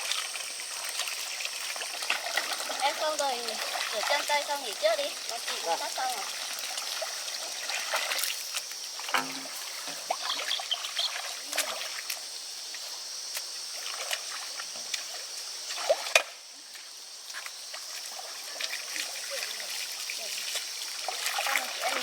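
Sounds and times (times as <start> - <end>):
water trickling: 0.0 - 13.0, 13.6 - 22.0.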